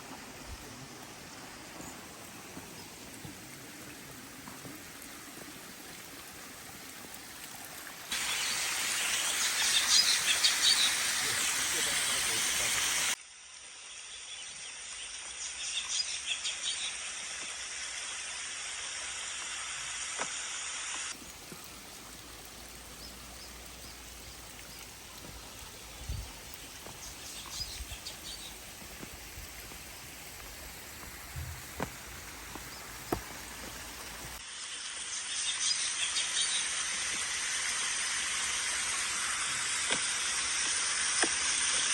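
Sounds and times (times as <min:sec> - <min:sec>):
steady outdoor hiss: 0:00.0 - 0:41.9
small birds chirping: 0:08.3 - 0:12.4, 0:21.5 - 0:34.4.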